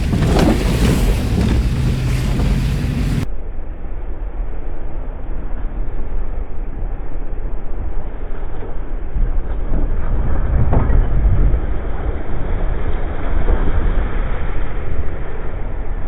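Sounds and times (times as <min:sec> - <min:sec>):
vehicle driving through mud: 0:00.0 - 0:03.3.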